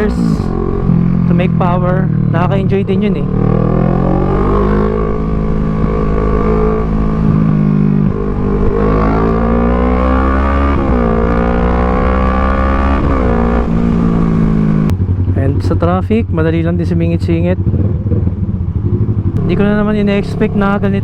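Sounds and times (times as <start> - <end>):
motorcycle engine accelerating: 0.0 - 21.0.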